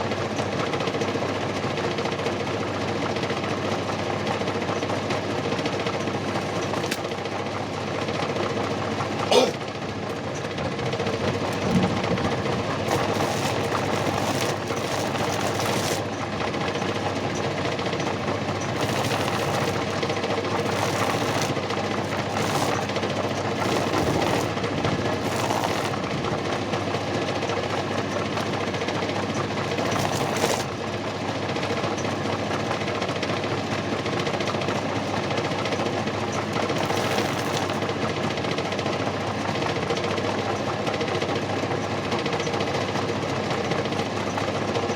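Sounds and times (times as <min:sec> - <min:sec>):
lathe motor humming: 0:12.6 - 0:16.4, 0:18.7 - 0:26.2, 0:29.5 - 0:30.8, 0:36.7 - 0:37.9.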